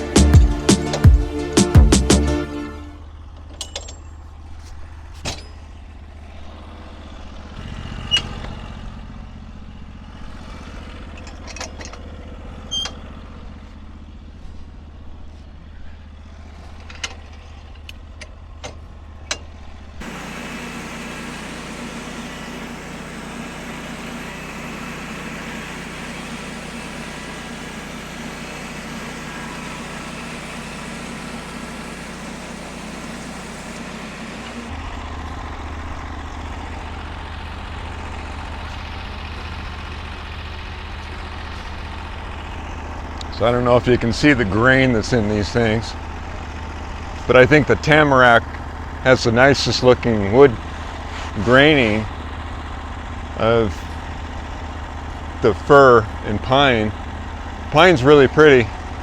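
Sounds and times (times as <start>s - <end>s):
hissy machine noise: 0.0s - 3.0s, 20.0s - 35.0s
engine running: 0.0s - 59.0s.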